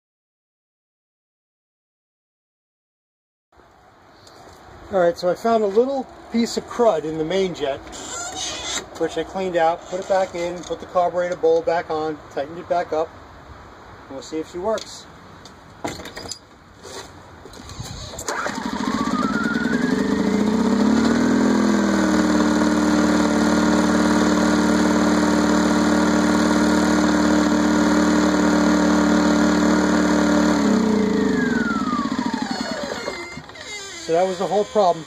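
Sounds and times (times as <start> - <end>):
generator engine starting and running: 17.6 - 35.0.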